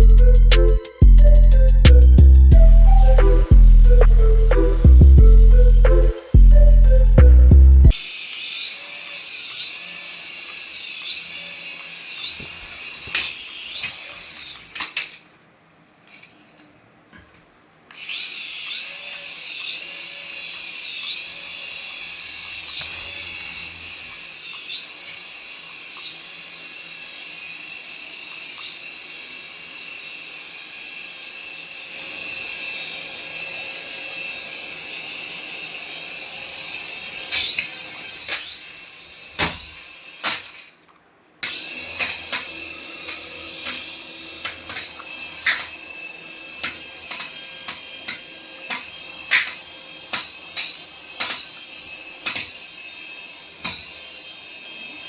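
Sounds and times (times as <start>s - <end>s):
toy electric motor whining: 7.9s - 15.2s, 17.9s - 40.8s, 41.4s - 55.0s.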